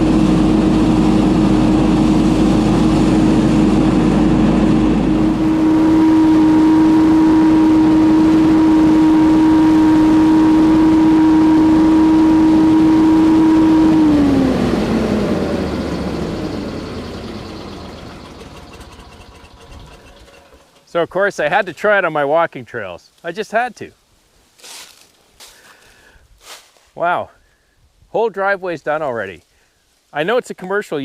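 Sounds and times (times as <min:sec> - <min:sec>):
debris blower engine whining: 0:00.0 - 0:21.1.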